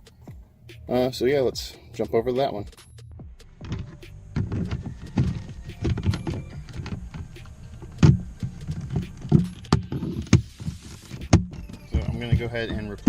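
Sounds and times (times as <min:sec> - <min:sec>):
plastic parts clicking and rattling: 0:03.6 - 0:12.4.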